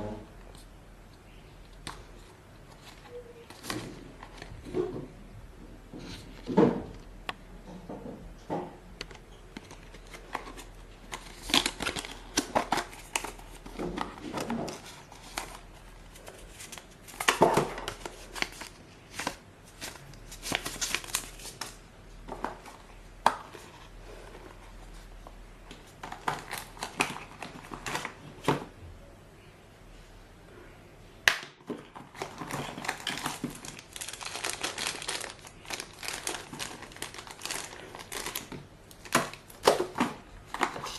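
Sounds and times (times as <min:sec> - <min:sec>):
packaging crinkling and rustling: 0:01.7 - 0:04.9, 0:09.0 - 0:28.7, 0:31.6 - 0:40.9.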